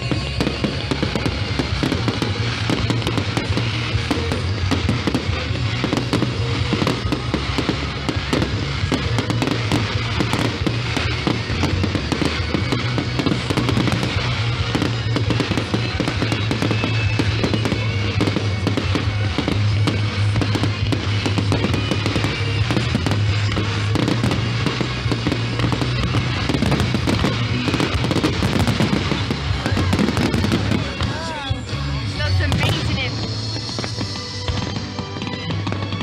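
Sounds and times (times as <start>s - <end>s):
fireworks bangs and crackles: 0.0s - 36.0s
music playing: 0.0s - 36.0s.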